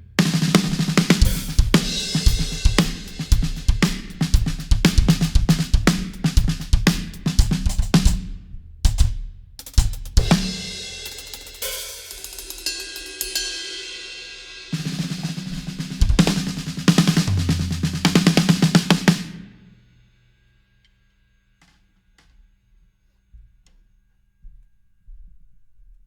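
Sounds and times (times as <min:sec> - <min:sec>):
drum hits: 0:00.0 - 0:13.4, 0:14.7 - 0:19.6
snare and tom strokes: 0:00.0 - 0:13.5, 0:14.7 - 0:19.8.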